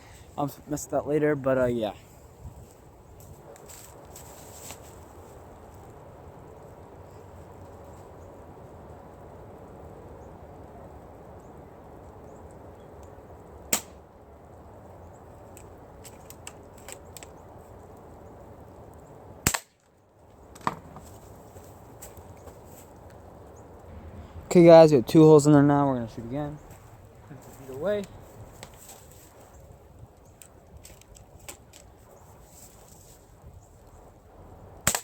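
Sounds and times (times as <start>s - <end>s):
low background noise: 0.0s - 35.0s
airsoft rifle shot snap: 13.7s - 14.0s, 19.4s - 19.8s.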